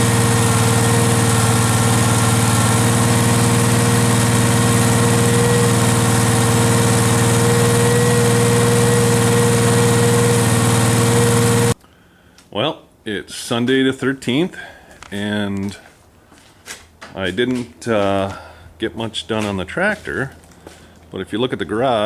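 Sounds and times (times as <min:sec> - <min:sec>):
garden tractor engine running: 0:00.0 - 0:11.8.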